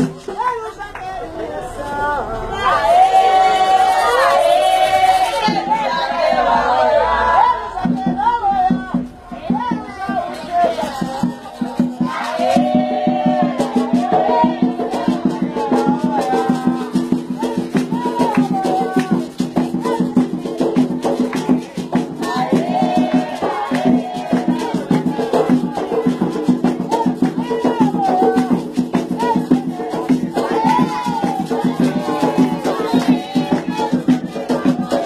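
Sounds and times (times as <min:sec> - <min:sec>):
percussion: 0:00.0 - 0:35.0
devotional singing: 0:01.3 - 0:35.0.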